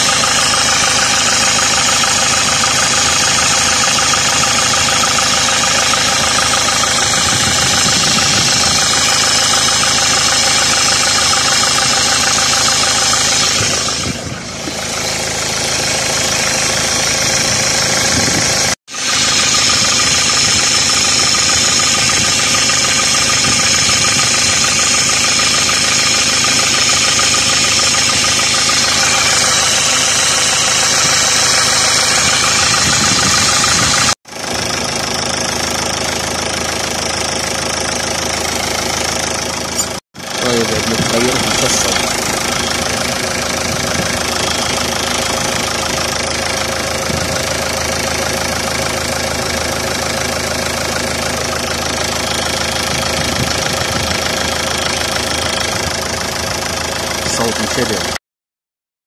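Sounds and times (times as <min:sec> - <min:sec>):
car engine running: 0:00.0 - 0:58.2.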